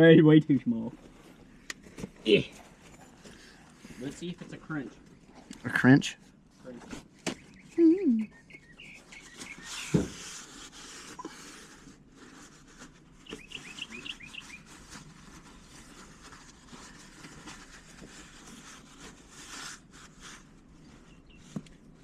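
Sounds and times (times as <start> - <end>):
faint outdoor background noise: 0.0 - 22.0
bird chirping: 7.2 - 10.4, 13.2 - 14.8, 21.1 - 21.5.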